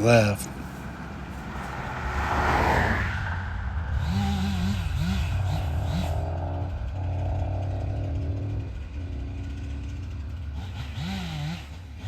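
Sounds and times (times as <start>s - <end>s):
vehicle hiss passing: 0.0s - 8.6s
low engine hum: 0.0s - 12.0s.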